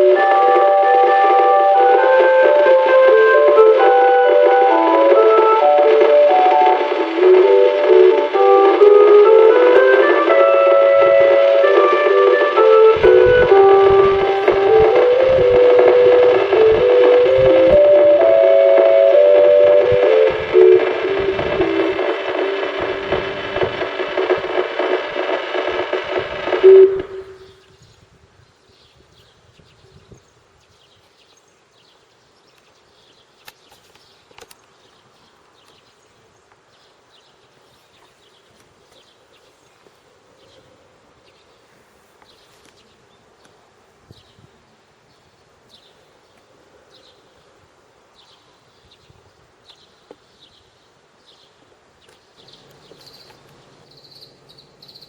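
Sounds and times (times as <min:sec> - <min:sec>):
faint hum: 0:00.0 - 0:27.6, 0:52.4 - 0:55.0
soft high chirps: 0:52.4 - 0:55.0.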